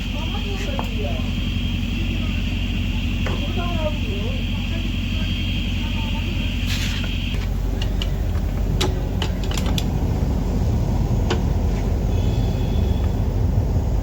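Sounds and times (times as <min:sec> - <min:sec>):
machinery rumbling: 0:00.0 - 0:14.0.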